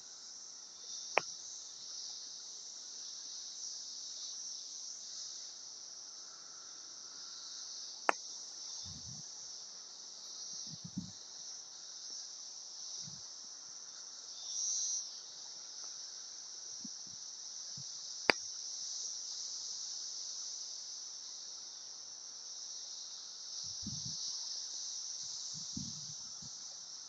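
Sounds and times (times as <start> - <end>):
cicadas buzzing: 0.0 - 27.0.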